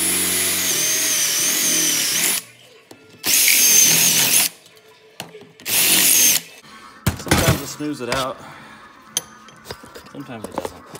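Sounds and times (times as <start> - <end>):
electric drill boring steel: 0.0 - 2.5, 3.2 - 4.6, 5.6 - 6.6.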